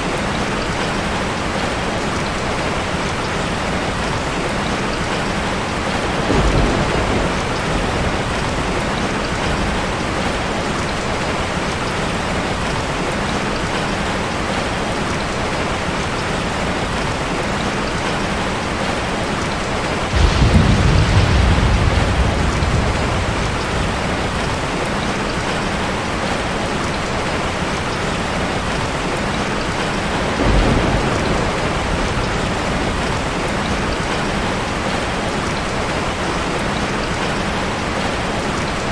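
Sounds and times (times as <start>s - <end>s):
steady rain falling: 0.0s - 38.9s
thunder rumbling: 5.6s - 11.6s, 20.0s - 26.4s, 29.7s - 35.6s.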